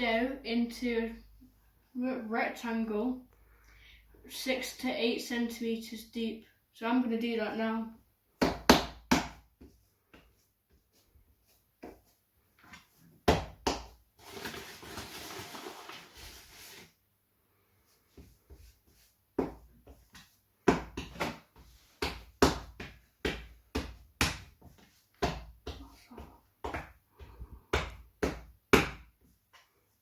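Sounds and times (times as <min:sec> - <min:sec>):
hands patting bread dough: 0:08.4 - 0:14.0, 0:18.2 - 0:29.7.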